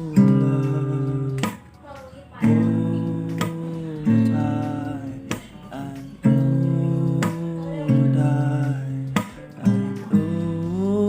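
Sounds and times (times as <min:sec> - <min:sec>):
acoustic guitar strumming chords: 0:00.0 - 0:11.0.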